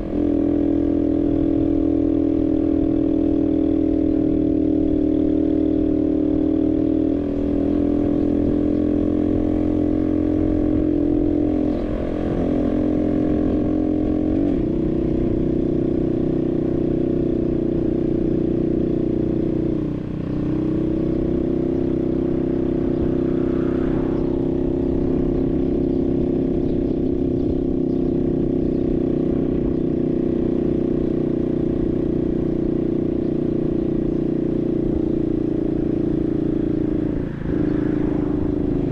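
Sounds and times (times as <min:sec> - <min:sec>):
moped engine running: 0:00.0 - 0:38.9.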